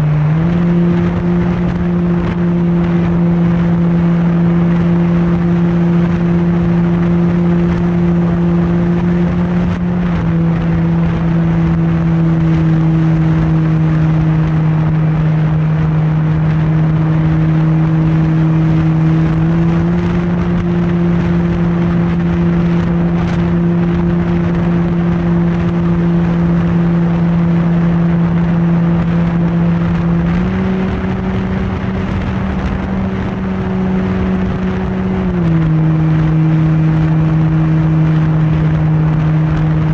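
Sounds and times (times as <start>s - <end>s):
constant rushing noise: 0.0s - 39.9s.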